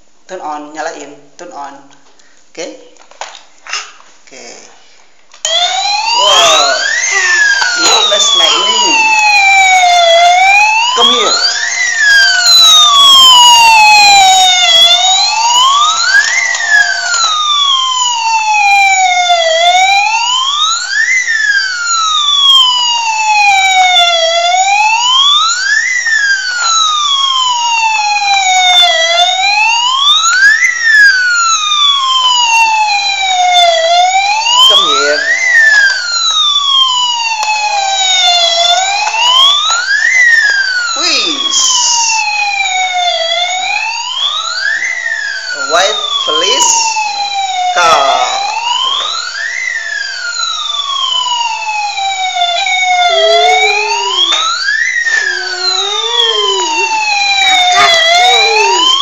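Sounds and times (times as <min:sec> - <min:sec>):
toy police car siren wailing: 0:05.5 - 0:59.0.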